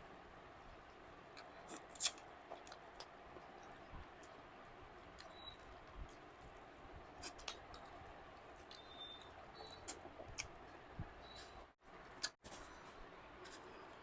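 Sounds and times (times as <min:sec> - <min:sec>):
chewing clicks and smacks: 0:07.2 - 0:10.8.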